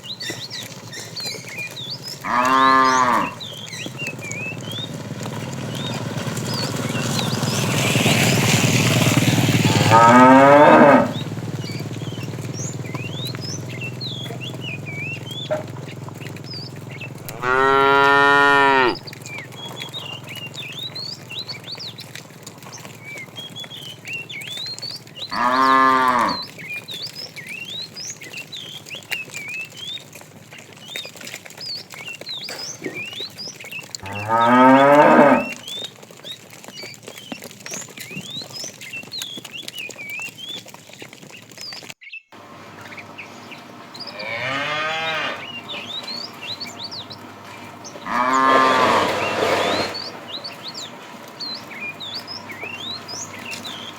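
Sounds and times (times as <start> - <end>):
small birds chirping: 0.0 - 53.9
cattle mooing: 2.2 - 7.8, 9.6 - 23.8, 25.2 - 26.5, 34.0 - 35.6, 42.7 - 53.9.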